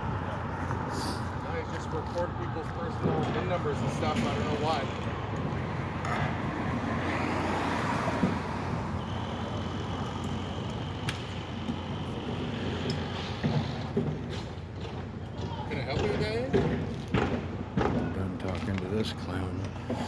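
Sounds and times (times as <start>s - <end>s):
vehicle passing: 0.0s - 15.1s
road traffic: 0.0s - 20.0s.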